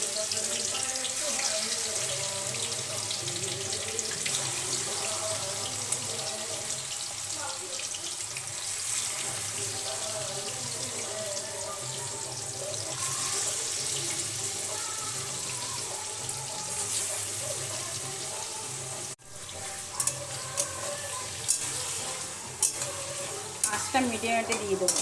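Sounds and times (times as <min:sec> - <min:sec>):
chicken sizzling in oil: 0:00.0 - 0:25.0.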